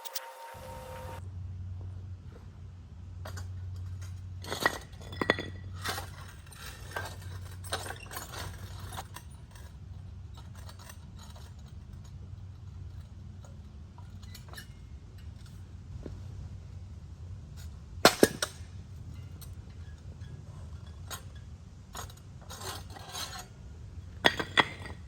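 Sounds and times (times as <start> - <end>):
low hum: 0.0 - 4.4
concrete blocks clinking: 3.3 - 9.8, 18.0 - 25.0.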